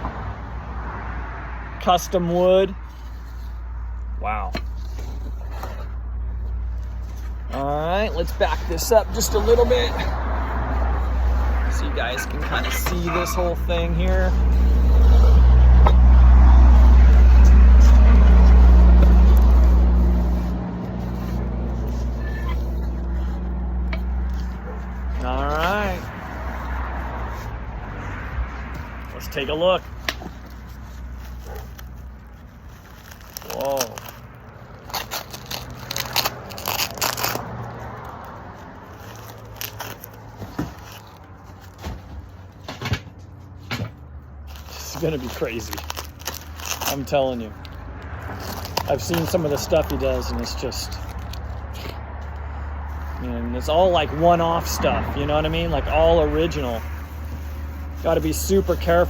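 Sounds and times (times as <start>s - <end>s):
packaging rustling and crinkling: 28.8s - 43.6s, 44.4s - 59.0s.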